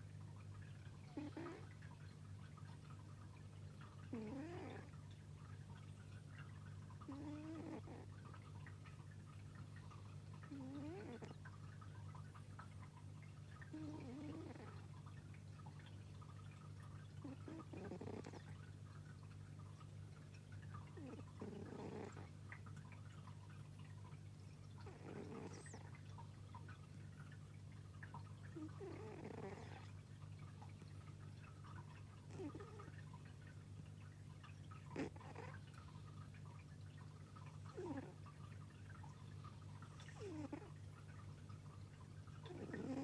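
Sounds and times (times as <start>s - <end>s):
pet snoring faintly: 0.8s - 2.0s, 3.8s - 5.1s, 7.0s - 8.4s, 9.8s - 11.6s, 13.6s - 15.0s, 17.1s - 18.7s, 20.7s - 22.9s, 24.4s - 26.8s, 28.0s - 30.0s, 31.6s - 33.3s, 34.6s - 36.0s, 37.4s - 40.9s, 42.4s - 43.0s.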